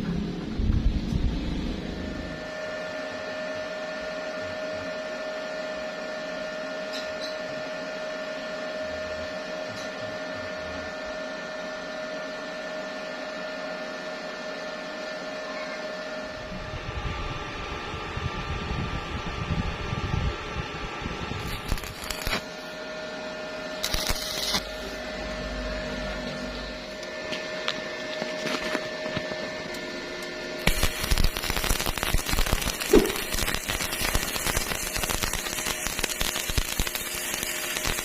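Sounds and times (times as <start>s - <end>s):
uneven low rumble: 0.0s - 2.4s
high whine: 0.0s - 7.6s, 8.3s - 38.0s
motor humming: 21.0s - 38.0s.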